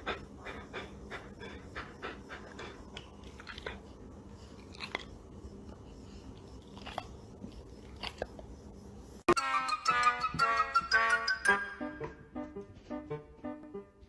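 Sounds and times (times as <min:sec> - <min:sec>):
pet chewing and crunching: 0:00.0 - 0:08.8.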